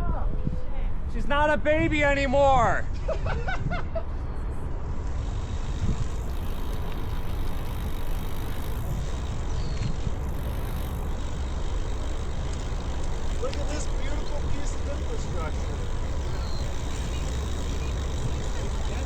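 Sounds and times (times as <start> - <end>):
wind buffeting microphone: 4.7 - 19.0
bicycle rolling: 4.8 - 19.0.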